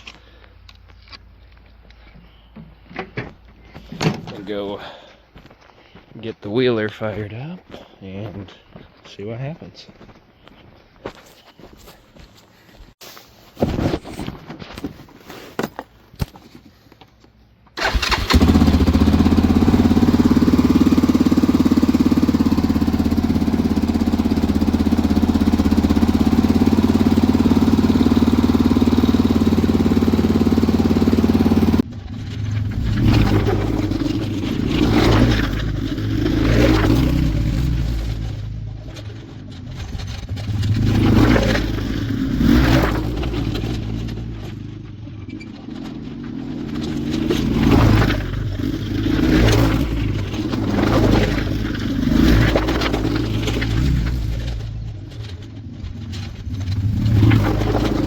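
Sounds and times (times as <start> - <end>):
atv engine running and revving: 17.9 - 58.0.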